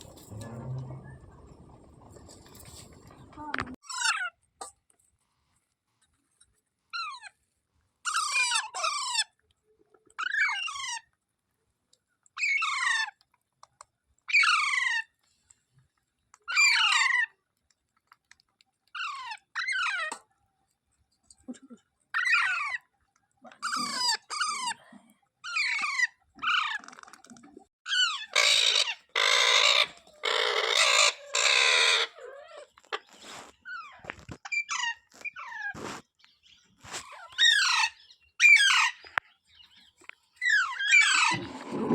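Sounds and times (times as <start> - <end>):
parrot screeching: 27.9 - 32.6, 37.3 - 39.0, 40.4 - 41.6.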